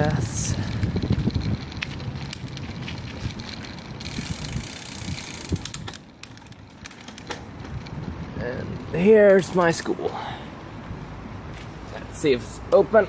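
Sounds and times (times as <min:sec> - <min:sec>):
wind buffeting microphone: 0:00.0 - 0:06.2, 0:07.3 - 0:09.4.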